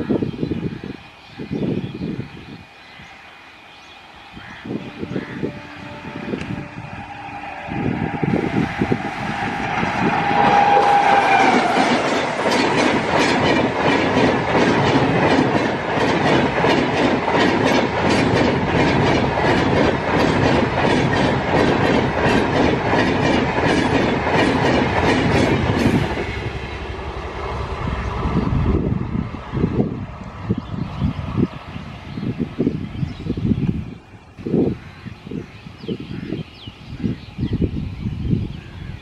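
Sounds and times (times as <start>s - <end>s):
electric locomotive horn: 4.4s - 12.0s
train wheels clickety-clack: 8.4s - 26.5s.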